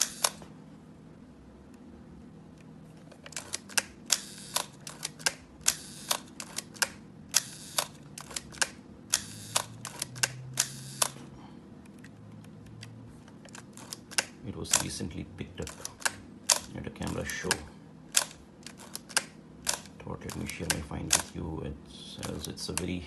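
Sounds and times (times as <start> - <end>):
camera shutter clicking: 0.0 - 0.4, 3.3 - 11.2
film advance lever ratcheting: 0.0 - 0.4, 3.2 - 11.2, 15.6 - 21.3.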